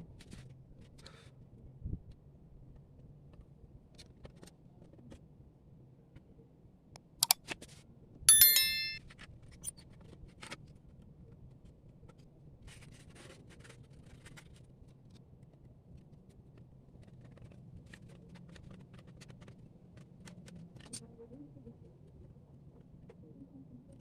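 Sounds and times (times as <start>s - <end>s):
sharp metallic clink: 8.3s - 9.0s.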